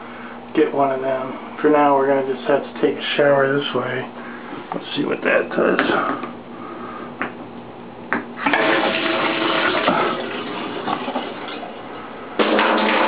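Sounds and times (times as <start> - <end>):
shower water running: 8.4 - 12.0.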